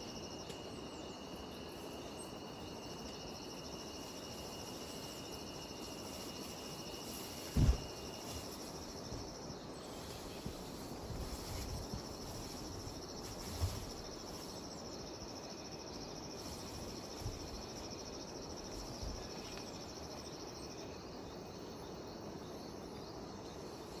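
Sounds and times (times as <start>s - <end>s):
cicadas buzzing: 0.0s - 24.0s
soft outdoor hiss: 0.0s - 24.0s.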